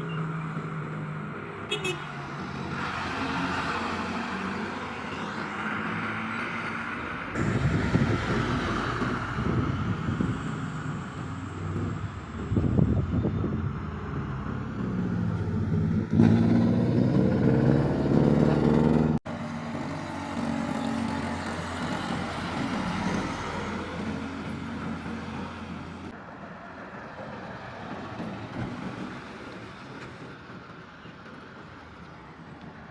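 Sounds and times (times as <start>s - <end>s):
road and tyre noise: 0.0s - 32.9s
heavy vehicle engine passing: 2.2s - 26.2s.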